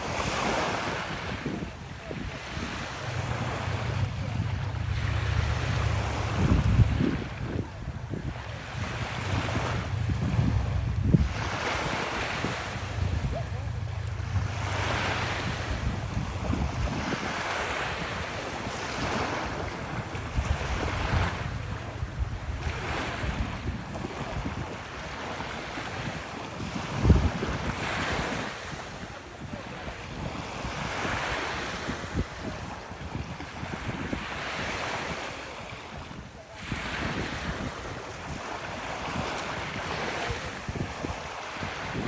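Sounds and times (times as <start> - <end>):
sea waves breaking on beach: 0.0 - 42.0
wind on microphone: 0.0 - 42.0
sharp low thump: 2.4 - 17.4.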